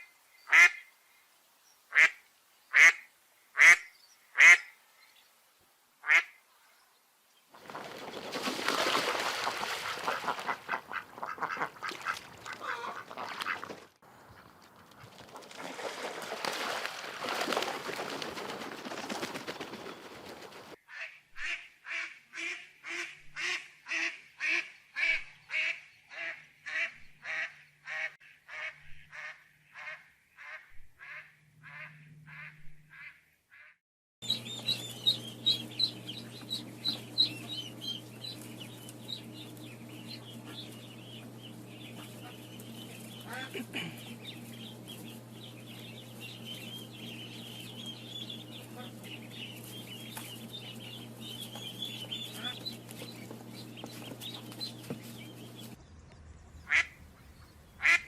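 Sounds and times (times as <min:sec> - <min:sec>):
flock of ducks quacking: 0:00.0 - 0:00.9, 0:01.9 - 0:04.7, 0:06.0 - 0:06.4, 0:09.5 - 0:15.7, 0:20.1 - 0:55.7, 0:56.7 - 0:58.0
single duck quacking: 0:00.5 - 0:00.9, 0:01.9 - 0:04.8, 0:06.0 - 0:06.4, 0:09.9 - 0:13.7, 0:20.9 - 0:33.8, 0:43.2 - 0:44.2, 0:56.7 - 0:57.0, 0:57.8 - 0:58.0
steady low hum: 0:34.2 - 0:58.0.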